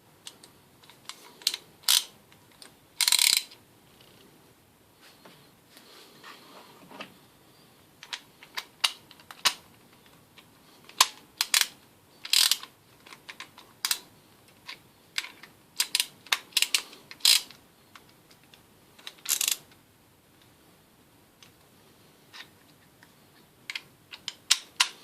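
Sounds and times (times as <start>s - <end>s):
tools clicking: 0.4s - 3.6s.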